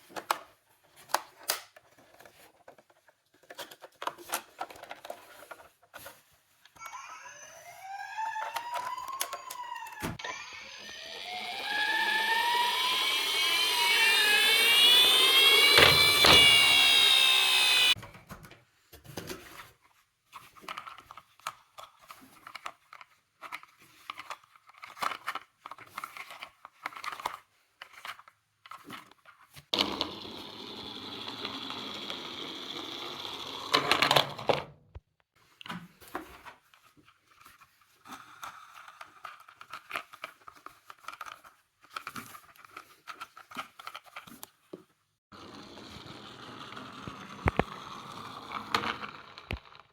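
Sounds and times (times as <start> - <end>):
plastic toy cars clicking: 0.0 - 6.2, 20.6 - 34.7, 38.2 - 44.6, 45.8 - 49.9
toy siren wailing: 6.8 - 18.0
small motor whirring: 7.1 - 18.0.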